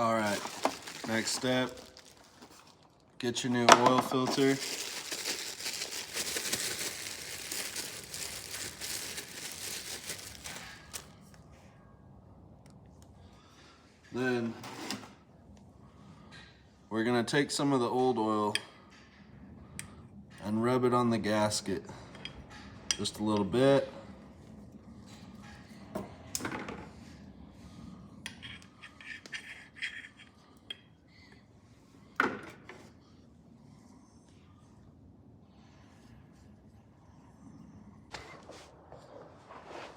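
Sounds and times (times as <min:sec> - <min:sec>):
hands handling oil filter: 0:00.0 - 0:11.1
packaging crinkling and rustling: 0:00.0 - 0:11.3.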